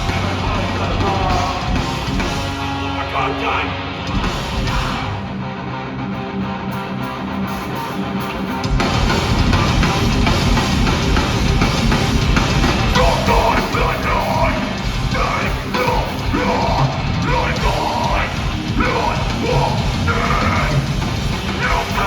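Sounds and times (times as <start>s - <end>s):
metalcore band playing live: 0.0s - 22.0s.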